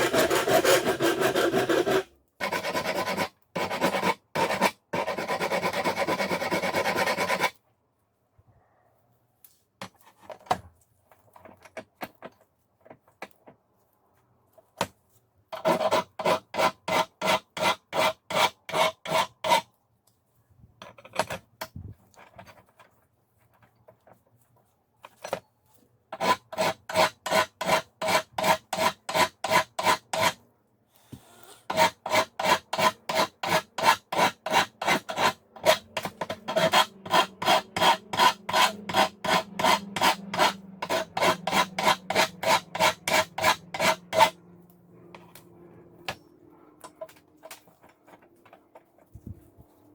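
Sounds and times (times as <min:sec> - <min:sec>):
file strokes on steel: 0:00.0 - 0:07.6, 0:15.6 - 0:19.7, 0:26.1 - 0:30.4, 0:31.0 - 0:44.4
scraping and handling: 0:09.4 - 0:15.3, 0:20.1 - 0:25.9, 0:45.2 - 0:49.9.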